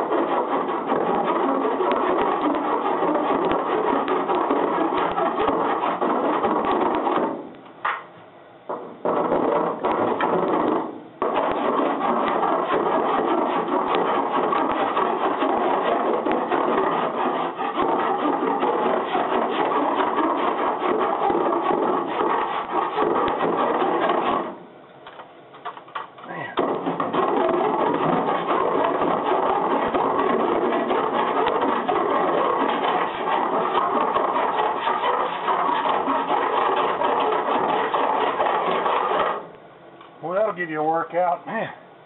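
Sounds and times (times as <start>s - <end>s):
hand file scraping metal: 0.0s - 7.1s, 11.2s - 24.6s, 26.6s - 39.5s.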